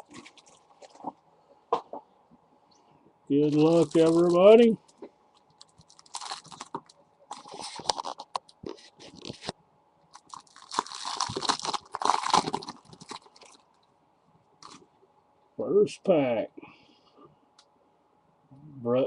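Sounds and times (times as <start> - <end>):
foil wrappers crinkling: 0.0 - 1.1, 3.3 - 4.7, 5.4 - 9.5, 10.1 - 13.8, 14.6 - 14.8.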